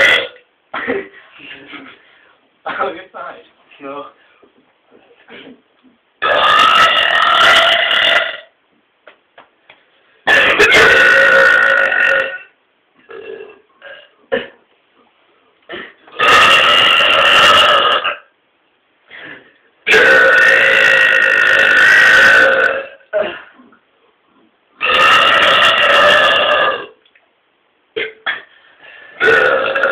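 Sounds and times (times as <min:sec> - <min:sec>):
men burping loudly: 0:00.0 - 0:01.0, 0:06.2 - 0:08.5, 0:10.3 - 0:12.5, 0:15.7 - 0:18.2, 0:19.8 - 0:23.8, 0:24.8 - 0:26.9, 0:29.2 - 0:29.9.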